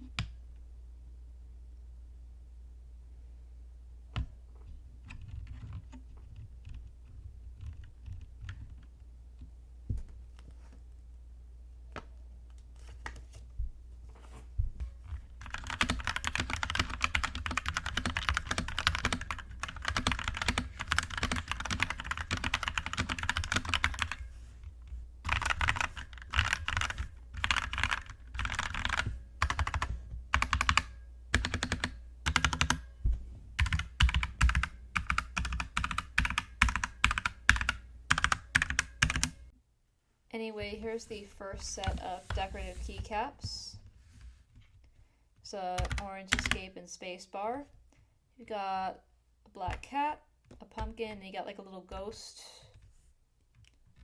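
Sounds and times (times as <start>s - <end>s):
typing on mechanical keyboard: 5.0s - 8.9s, 15.1s - 24.3s, 25.3s - 32.9s, 33.6s - 39.4s, 45.8s - 46.6s.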